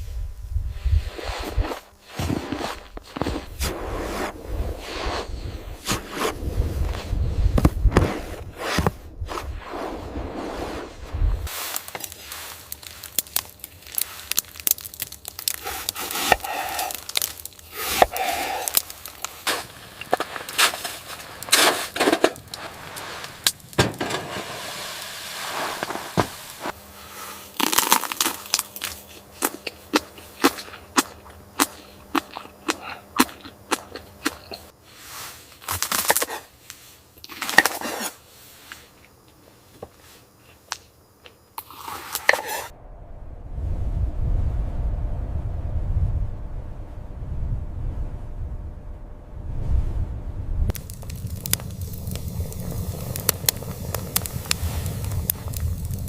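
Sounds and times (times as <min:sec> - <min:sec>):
rustling: 0:01.0 - 0:28.0
sharp cracks and snaps: 0:11.5 - 0:24.4, 0:27.5 - 0:34.7, 0:35.6 - 0:38.1, 0:50.7 - 0:56.0.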